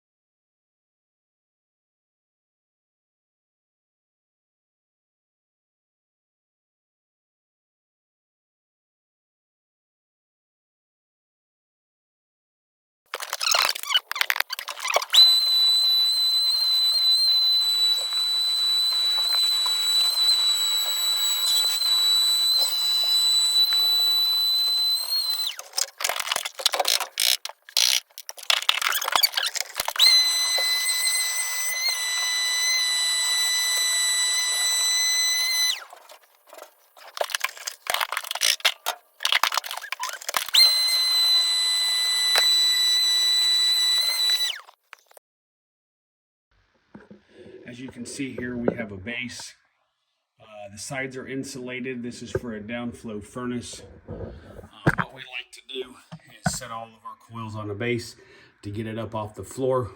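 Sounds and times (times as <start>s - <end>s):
power tool motor whine: 13.2s - 45.2s.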